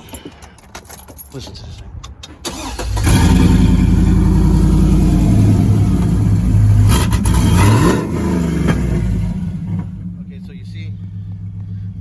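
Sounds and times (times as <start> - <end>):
engine running loud: 2.9 - 12.0.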